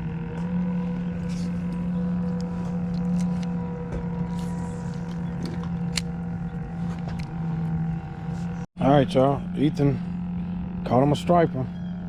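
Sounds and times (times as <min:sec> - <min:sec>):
mechanical hum: 0:00.0 - 0:08.7.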